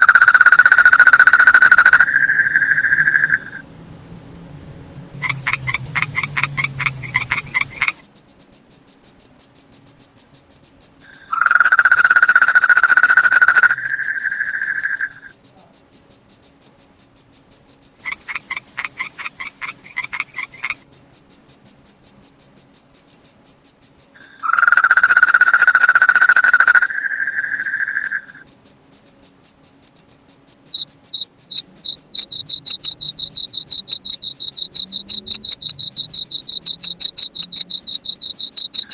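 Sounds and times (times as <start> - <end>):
cricket chirping: 0.0 - 3.6, 5.3 - 38.9
night animal call: 0.0 - 3.6, 5.2 - 8.2, 11.0 - 15.7, 18.0 - 20.9, 24.2 - 28.6, 30.7 - 38.9
short pulsed calls: 30.7 - 38.9.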